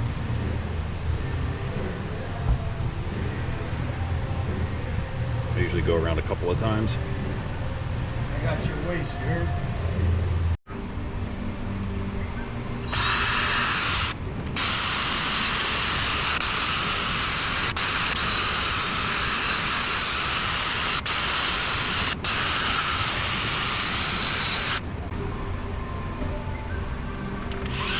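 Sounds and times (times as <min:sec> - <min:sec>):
high-pitched power tool whine: 0:12.8 - 0:24.9, 0:27.6 - 0:27.9.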